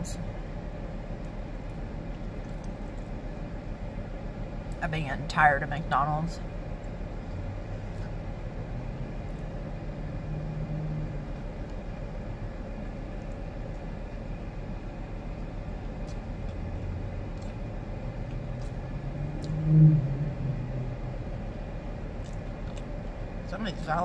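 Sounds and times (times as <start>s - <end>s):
traffic rumble: 0.0s - 24.0s
car passing close: 7.3s - 11.7s, 16.3s - 22.4s.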